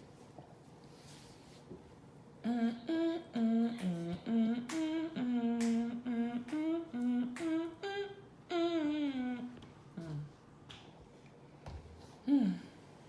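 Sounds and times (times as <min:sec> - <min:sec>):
woman humming a tune: 0:02.4 - 0:10.4, 0:12.2 - 0:12.8.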